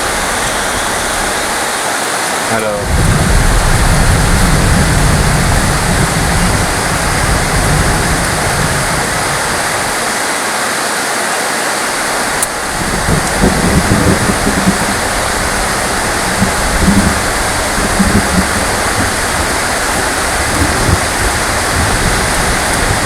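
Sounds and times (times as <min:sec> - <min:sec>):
heavy rain: 0:00.0 - 0:23.0
low rumble: 0:02.8 - 0:10.0, 0:12.3 - 0:23.0.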